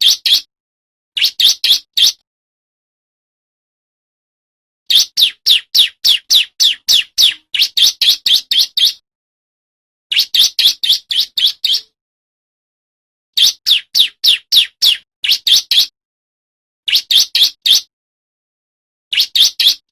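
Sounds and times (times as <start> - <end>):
bird singing high downslurred notes: 4.9 - 9.0, 13.4 - 15.9.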